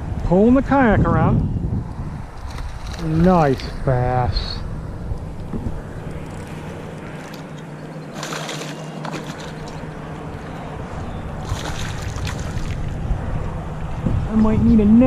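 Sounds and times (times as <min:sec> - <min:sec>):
low hum: 0:00.8 - 0:15.0
water sloshing around kayak: 0:02.1 - 0:03.8, 0:05.0 - 0:13.6.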